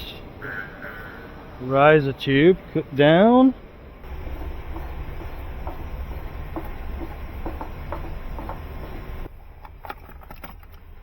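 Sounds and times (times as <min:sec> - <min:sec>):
low steady rumble: 0:03.5 - 0:11.0.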